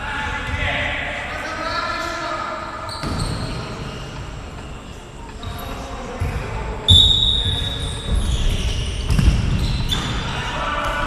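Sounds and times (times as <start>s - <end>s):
referee's whistle blast: 6.9s - 8.0s.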